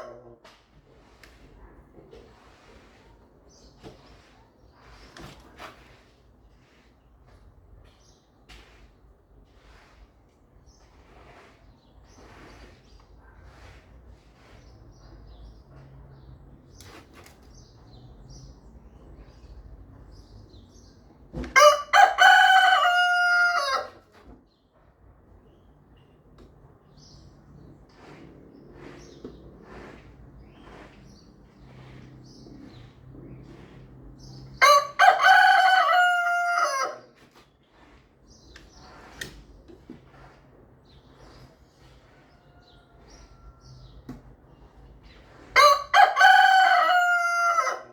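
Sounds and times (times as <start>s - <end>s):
rooster crowing: 21.6s - 24.0s, 34.6s - 37.0s, 45.6s - 47.9s.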